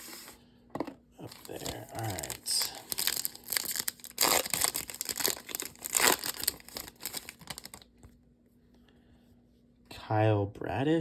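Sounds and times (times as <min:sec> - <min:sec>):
wrapper tearing and crinkling: 0:01.3 - 0:07.9.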